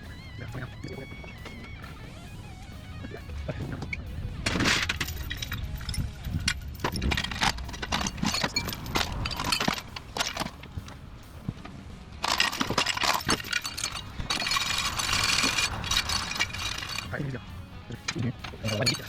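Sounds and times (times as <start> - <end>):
rasping rattle: 0.0 - 19.0
metal tools clinking and knocking: 3.8 - 11.0, 12.2 - 17.2, 18.0 - 19.0.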